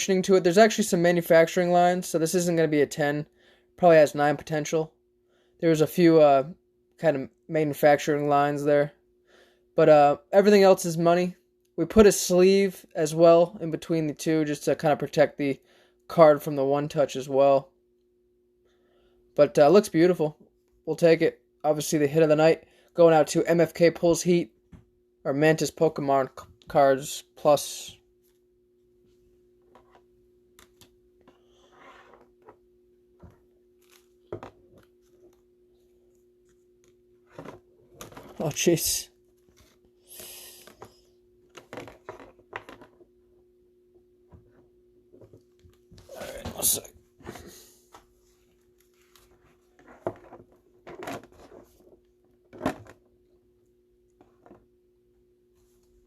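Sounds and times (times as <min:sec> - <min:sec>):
low steady hum: 0:00.0 - 0:56.0
plastic sleeves rustling: 0:29.6 - 0:43.2.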